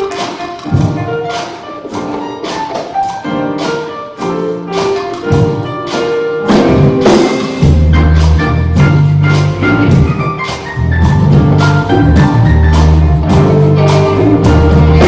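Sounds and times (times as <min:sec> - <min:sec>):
instrumental music with percussion: 0:00.0 - 0:15.0
heavy bass line: 0:07.6 - 0:15.0.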